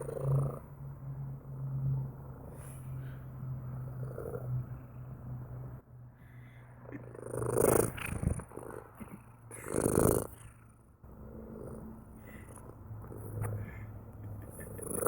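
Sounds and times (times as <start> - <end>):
cat purring: 0.0 - 0.7, 3.8 - 5.0, 6.8 - 15.0.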